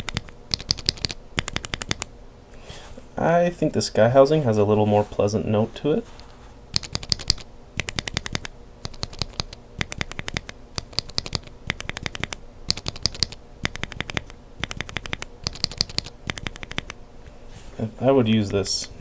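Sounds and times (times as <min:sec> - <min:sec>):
mechanical keyboard typing: 0:00.0 - 0:02.1, 0:06.7 - 0:17.0.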